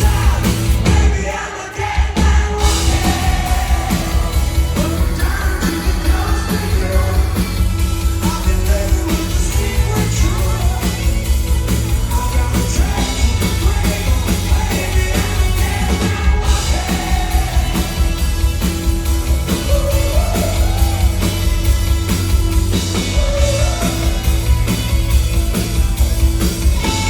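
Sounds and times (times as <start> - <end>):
person singing and yelling: 0.0 - 7.6, 8.2 - 17.9, 19.6 - 21.4, 23.1 - 24.6
live rock band playing: 0.0 - 27.0
steady drum beat: 0.0 - 27.0.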